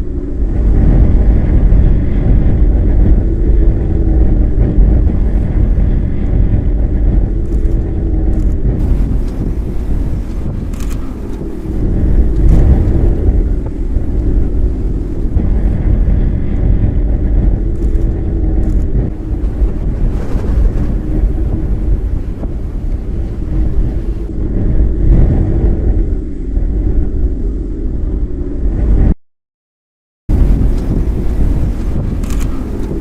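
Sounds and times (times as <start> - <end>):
strong wind buffeting microphone: 0.0 - 29.2, 30.3 - 33.0.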